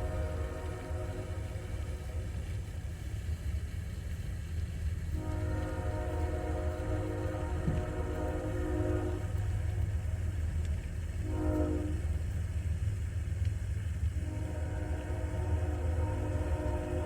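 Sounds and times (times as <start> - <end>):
train horn blasts: 0.0 - 2.7, 5.1 - 12.6, 14.2 - 17.0
steady low rumble: 0.0 - 17.0.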